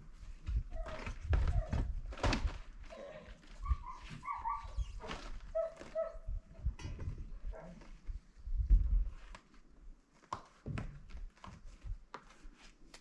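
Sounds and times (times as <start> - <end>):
animal whining: 0.6 - 1.9, 2.8 - 6.2.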